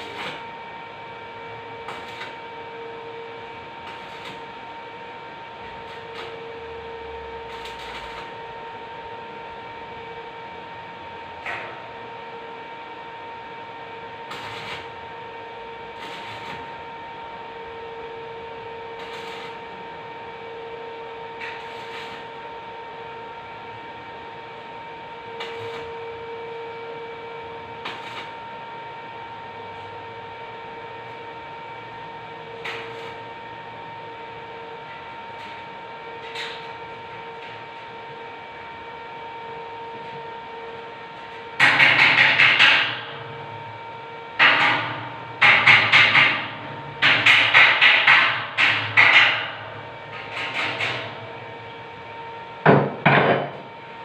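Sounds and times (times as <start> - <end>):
short noisy welding bursts: 0.0 - 0.4, 1.8 - 2.4, 3.8 - 4.5, 7.5 - 8.4, 14.2 - 15.0, 15.9 - 16.8, 19.0 - 19.7, 21.5 - 22.4, 25.4 - 25.9, 27.8 - 28.4
welding machine humming: 0.0 - 54.0.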